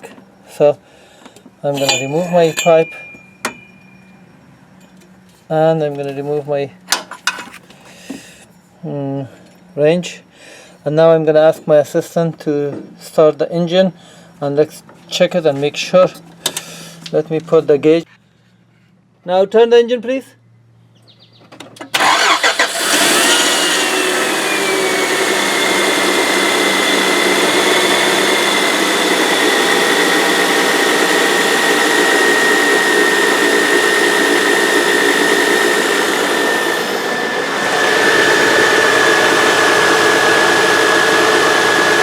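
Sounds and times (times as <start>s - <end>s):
steady high whine: 1.6s - 6.4s, 23.2s - 42.0s
car engine starting and idling: 21.9s - 42.0s.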